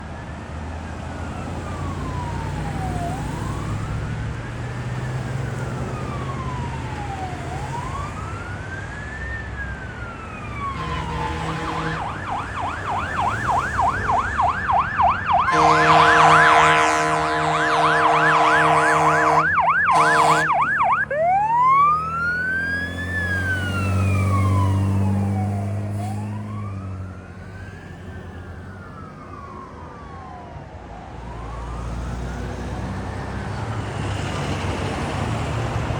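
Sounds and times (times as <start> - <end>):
fire engine siren: 0.0 - 35.9
horn blasts: 10.8 - 12.2, 15.5 - 21.3
diesel engine rumble: 10.8 - 26.7.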